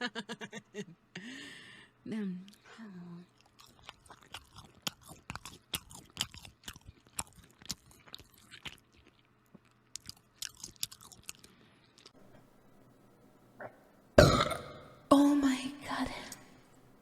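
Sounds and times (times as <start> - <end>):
chewing crunchy food: 3.3 - 12.2.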